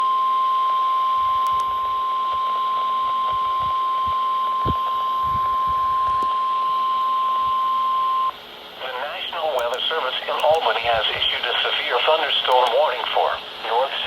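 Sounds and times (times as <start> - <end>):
radio hiss: 8.3 - 14.0.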